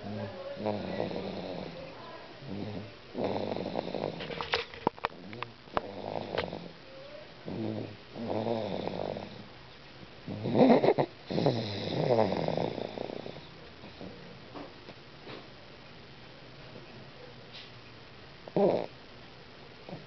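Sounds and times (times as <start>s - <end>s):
drawn-out snores: 0.0s - 4.4s, 5.2s - 6.8s, 7.4s - 9.5s, 10.3s - 14.3s, 18.6s - 19.0s.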